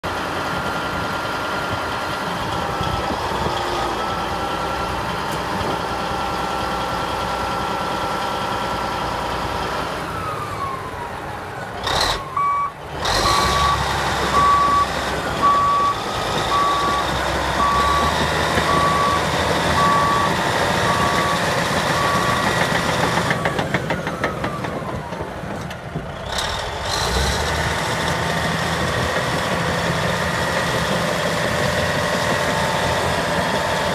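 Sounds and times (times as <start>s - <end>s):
bulldozer diesel engine running: 0.0s - 33.9s
backup alarm beeping: 14.4s - 21.4s.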